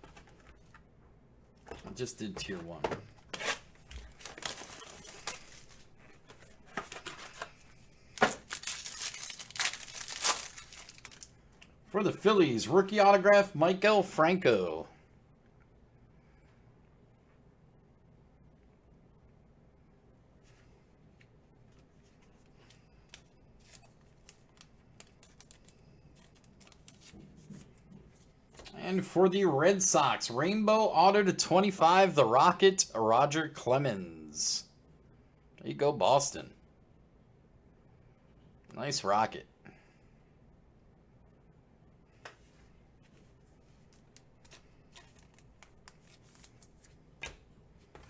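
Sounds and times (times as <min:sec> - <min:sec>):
cards and packaging rustling: 0:00.0 - 0:00.9, 0:01.7 - 0:11.4, 0:21.7 - 0:28.7, 0:42.4 - 0:48.0.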